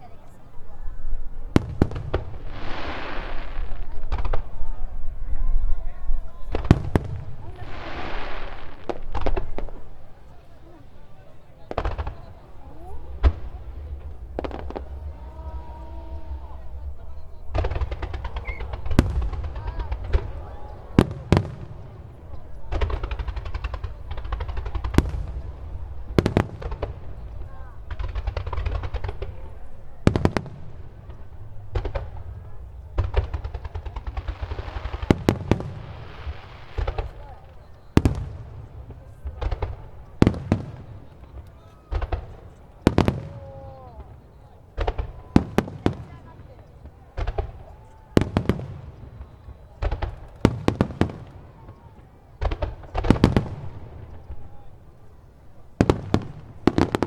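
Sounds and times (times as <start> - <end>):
fireworks bursting: 0.0 - 57.0
rumbling echo: 0.5 - 40.7.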